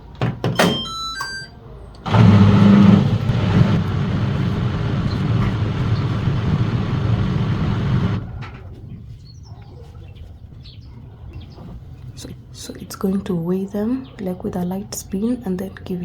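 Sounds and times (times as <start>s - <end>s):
washing machine motor hum: 2.0s - 8.4s.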